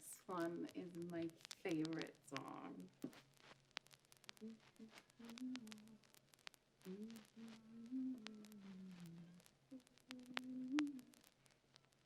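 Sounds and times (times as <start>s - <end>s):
faint clicks: 0.0s - 12.0s
person humming softly: 4.4s - 6.1s, 6.8s - 11.2s.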